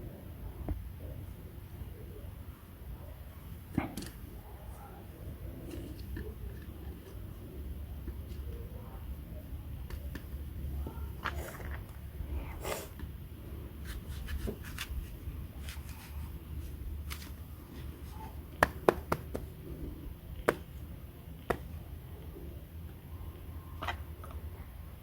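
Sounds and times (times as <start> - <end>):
steady low hum: 11.8 - 25.0.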